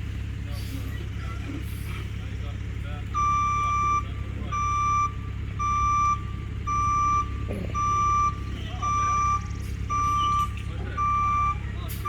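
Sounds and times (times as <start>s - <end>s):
diesel engine running: 0.0s - 12.0s
vehicle backup alarm beeping: 3.1s - 12.0s.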